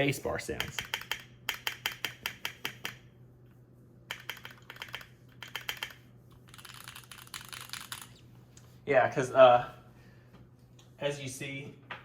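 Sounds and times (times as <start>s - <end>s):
mechanical keyboard clacking: 0.6s - 3.0s, 4.1s - 8.1s.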